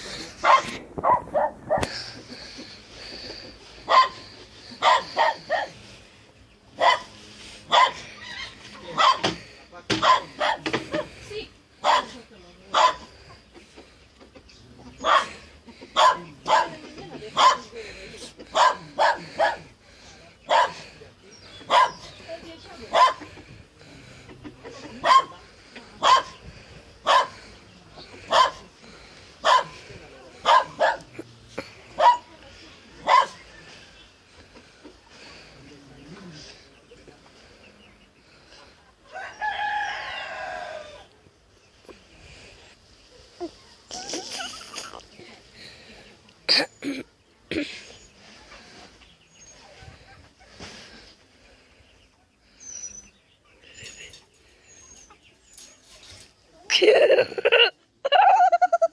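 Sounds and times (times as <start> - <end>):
dog barking: 0.4 - 1.9, 3.9 - 4.2, 4.8 - 5.8, 6.8 - 7.1, 7.7 - 8.0, 8.9 - 9.4, 10.0 - 10.7, 11.8 - 13.1, 15.0 - 15.4, 16.0 - 16.8, 17.4 - 17.7, 18.5 - 19.7, 20.5 - 20.8, 21.7 - 22.1, 22.9 - 23.3, 25.0 - 25.4, 26.0 - 26.4, 27.0 - 27.4, 28.3 - 28.7, 29.4 - 29.8, 30.4 - 31.1, 32.0 - 32.3, 33.0 - 33.4
dog barking sharply: 3.9 - 4.2, 9.0 - 9.4, 10.0 - 10.6.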